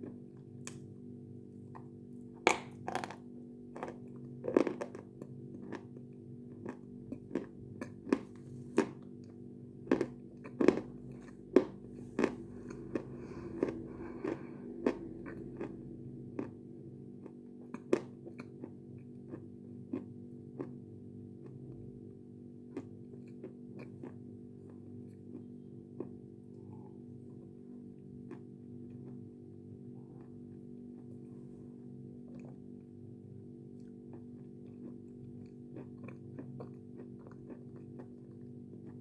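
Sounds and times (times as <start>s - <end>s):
steady low hum: 0.0s - 39.0s
person chewing chalk crunches: 2.5s - 16.6s, 33.8s - 39.0s.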